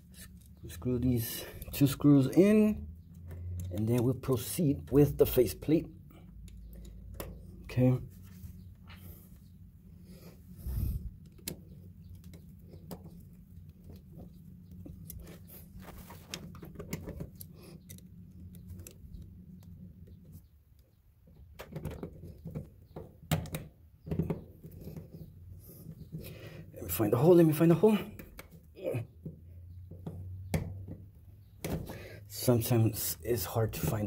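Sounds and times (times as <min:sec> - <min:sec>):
clicks and scrapes handling outlet: 0:11.2 - 0:20.4.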